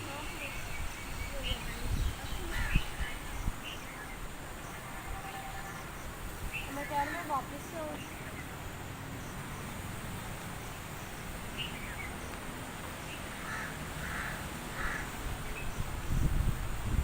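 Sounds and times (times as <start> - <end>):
harsh raspy bird calls: 13.1 - 15.7.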